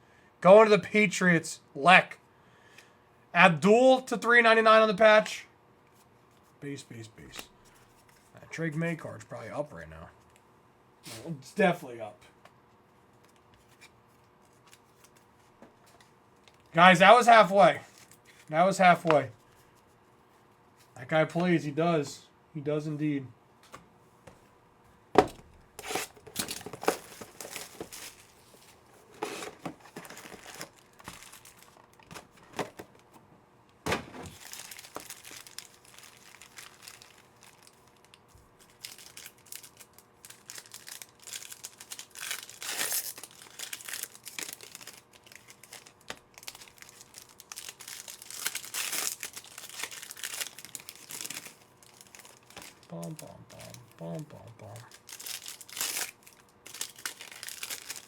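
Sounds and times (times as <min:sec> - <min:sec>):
foil wrappers tearing and crinkling: 0:25.8 - 0:32.8, 0:34.1 - 0:58.0.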